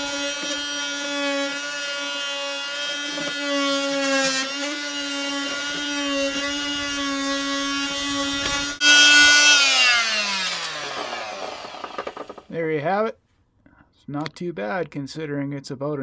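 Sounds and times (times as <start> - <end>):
blade rasping off undercoating: 0.0 - 12.5.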